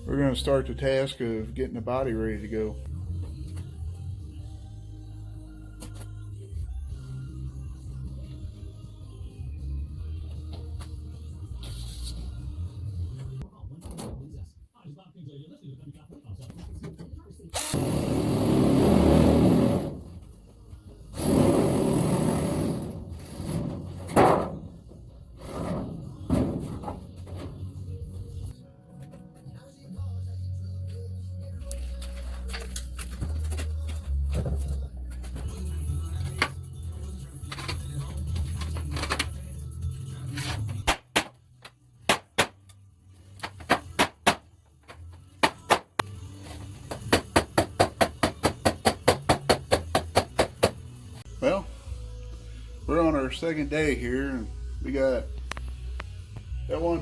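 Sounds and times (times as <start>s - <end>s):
sheet metal scraping and sliding: 22.2s - 27.8s.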